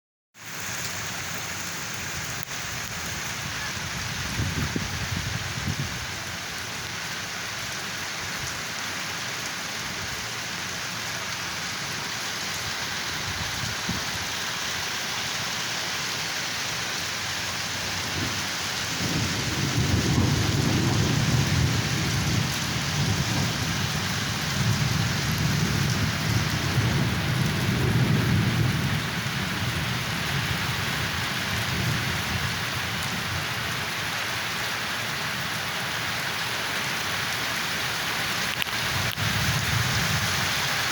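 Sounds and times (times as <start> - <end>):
steady rain falling: 0.4 - 40.9
thunder rumbling: 17.4 - 33.5.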